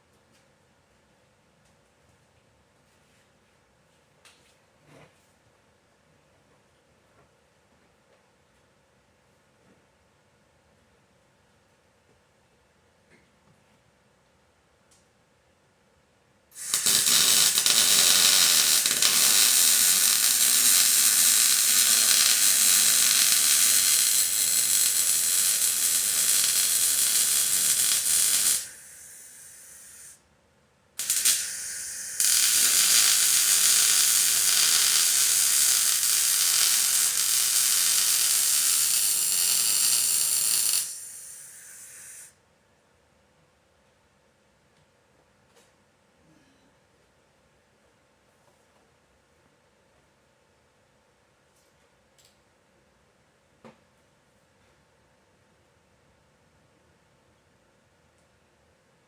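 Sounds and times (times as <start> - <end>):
arc welding hiss: 16.6 - 30.2, 31.0 - 42.3.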